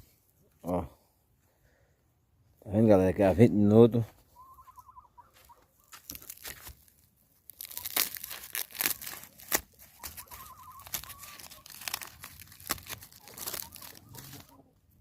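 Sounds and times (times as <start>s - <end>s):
corn husk tearing crackle: 5.9s - 14.7s.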